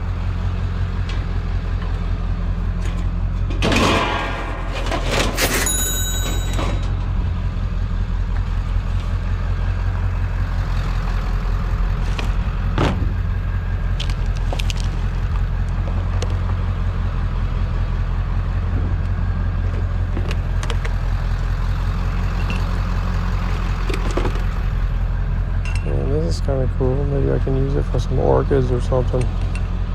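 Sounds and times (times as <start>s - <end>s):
vehicle engine idling: 0.0s - 3.6s, 6.7s - 29.9s
clinks and knocks of objects: 2.8s - 7.2s.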